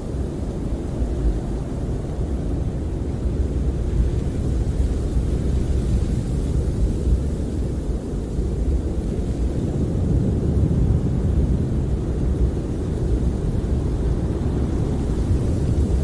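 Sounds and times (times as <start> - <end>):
snowstorm wind rumbling: 0.0 - 16.0.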